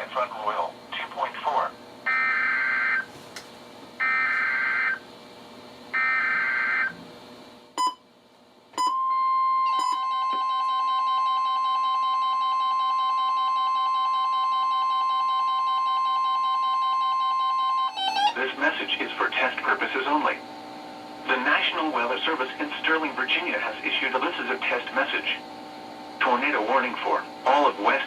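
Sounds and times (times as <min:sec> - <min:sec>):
steady warning alarm tone: 0:02.1 - 0:03.1, 0:04.0 - 0:05.0, 0:05.9 - 0:07.0, 0:08.8 - 0:18.4
weather radios beeping alarms: 0:08.8 - 0:18.4.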